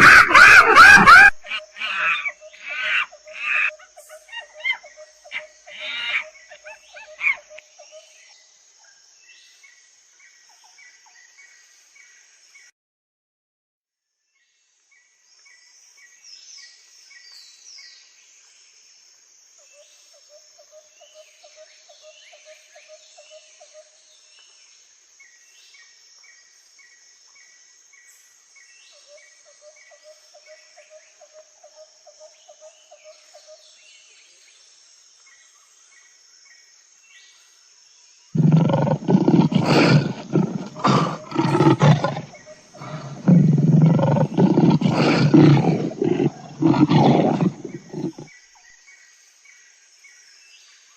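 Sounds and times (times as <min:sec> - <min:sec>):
large animal roaring: 0:38.4 - 0:48.2.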